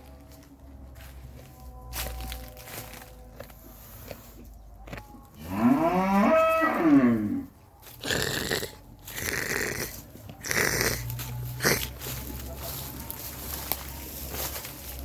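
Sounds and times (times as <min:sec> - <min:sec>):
camel bellowing: 0:05.3 - 0:12.4
camel grumbling: 0:05.4 - 0:12.2.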